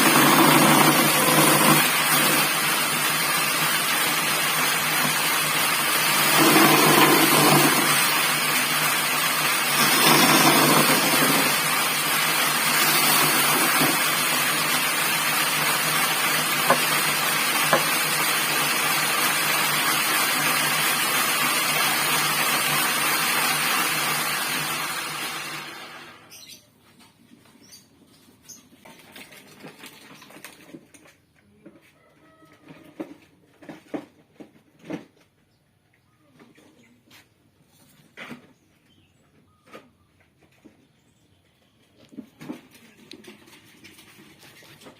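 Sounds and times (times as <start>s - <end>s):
bandsaw running: 0.0s - 26.3s.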